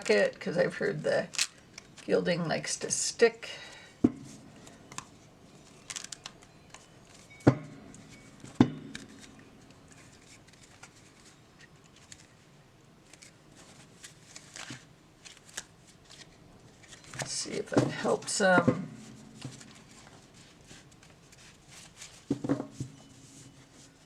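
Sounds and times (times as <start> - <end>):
cards rustling and clicking: 1.2 - 2.1, 4.3 - 7.3, 7.9 - 18.4, 19.0 - 22.9.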